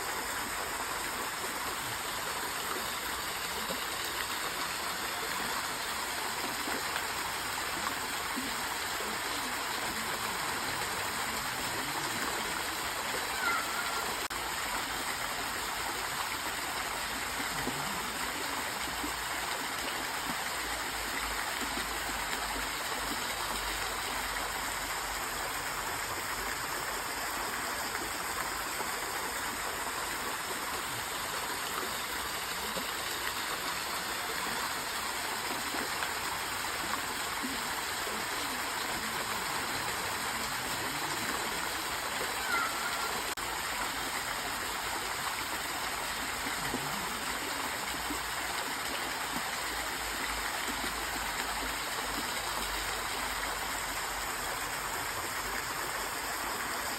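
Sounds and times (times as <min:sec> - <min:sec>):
stream water rushing: 0:00.0 - 0:56.9.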